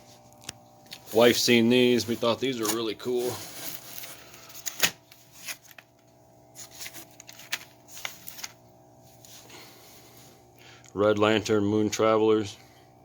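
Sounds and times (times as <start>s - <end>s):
paper packaging rustling: 0.8s - 9.5s.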